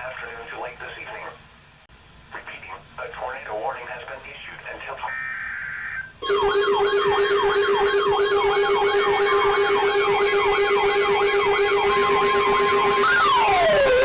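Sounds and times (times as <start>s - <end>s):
electronic siren yelp: 5.2s - 14.0s.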